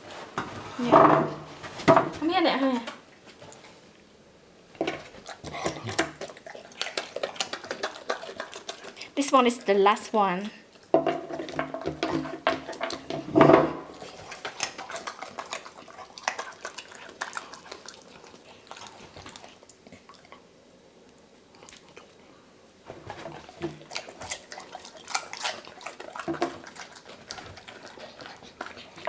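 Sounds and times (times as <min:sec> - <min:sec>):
dog crunching vegetable: 0:04.8 - 0:09.6, 0:10.7 - 0:20.5, 0:21.5 - 0:29.0.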